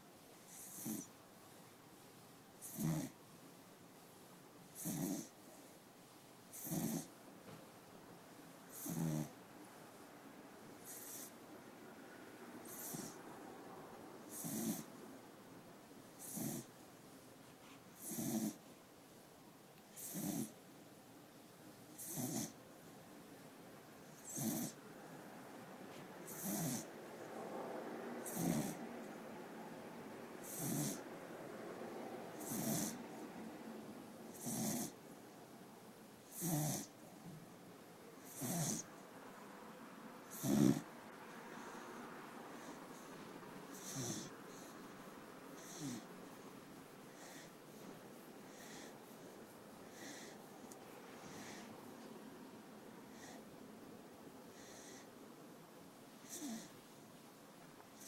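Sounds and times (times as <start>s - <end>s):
dog snoring: 0.4s - 1.2s, 2.6s - 3.2s, 4.6s - 5.7s, 6.5s - 7.2s, 8.7s - 9.4s, 10.8s - 11.4s, 12.6s - 13.3s, 14.2s - 15.0s, 16.1s - 16.8s, 17.6s - 18.6s, 19.9s - 20.6s, 21.9s - 22.6s, 24.0s - 24.8s, 25.9s - 27.0s, 28.2s - 28.9s, 30.4s - 31.1s, 32.3s - 33.2s, 34.3s - 35.1s, 36.2s - 37.4s, 38.2s - 39.0s, 40.2s - 44.8s, 45.6s - 46.1s, 47.1s - 47.8s, 48.4s - 52.0s, 53.1s - 53.4s, 54.5s - 55.1s, 56.2s - 56.8s.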